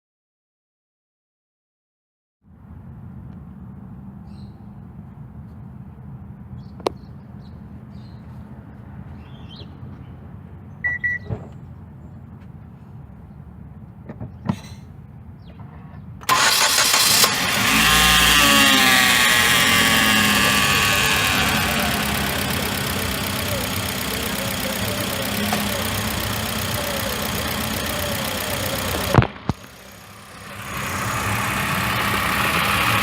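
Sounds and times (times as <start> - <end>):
short beep: 10.8 - 11.3
car engine starting and idling: 16.2 - 33.0
engine whine: 16.2 - 33.0
clicks: 20.8 - 29.9.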